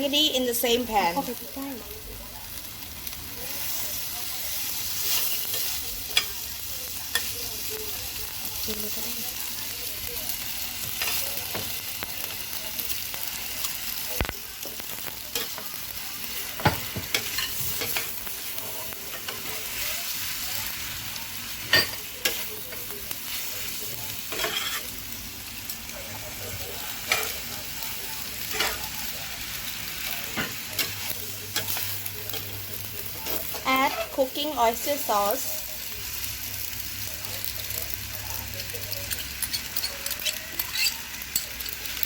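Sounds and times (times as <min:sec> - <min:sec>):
food sizzling in hot oil: 0:00.0 - 0:42.0.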